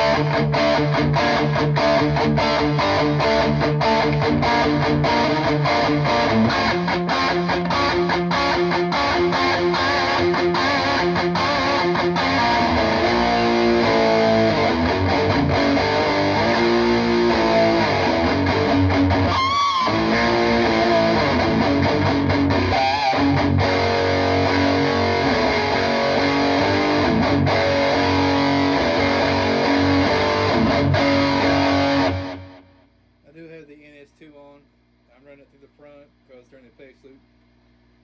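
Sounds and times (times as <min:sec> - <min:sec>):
electric guitar riffs and chords: 0:00.0 - 0:32.9.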